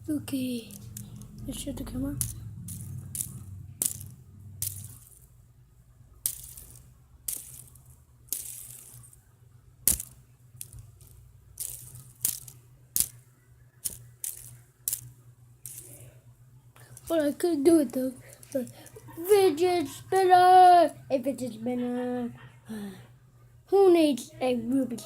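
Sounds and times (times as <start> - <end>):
low steady hum: 0.0 - 25.0
plastic objects clicking together: 0.7 - 1.4, 2.2 - 5.2, 9.9 - 13.2, 13.8 - 16.1.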